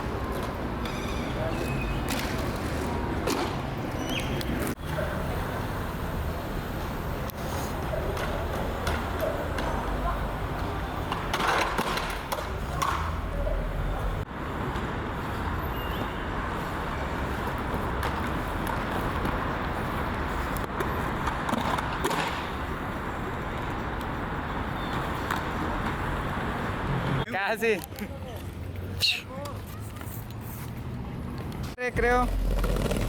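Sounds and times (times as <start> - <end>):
skateboard wheels rolling on pavement: 0.0 - 33.0
skateboard clacks and knocks: 8.0 - 13.2, 20.8 - 22.5.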